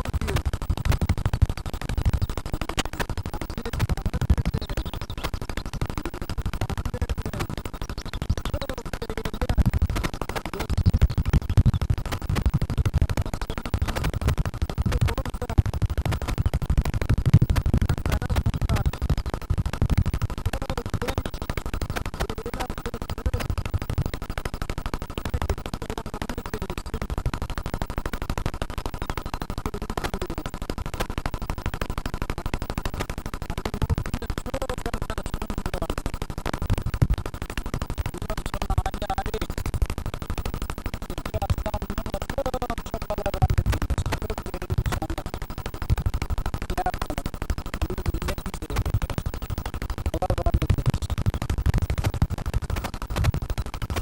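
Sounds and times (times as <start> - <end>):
crackling and buzzing distortion: 0.0 - 54.0
steady high hum: 0.0 - 54.0
muffled voices: 14.8 - 15.7, 17.9 - 19.0, 41.2 - 45.3, 46.7 - 49.0, 50.1 - 51.2.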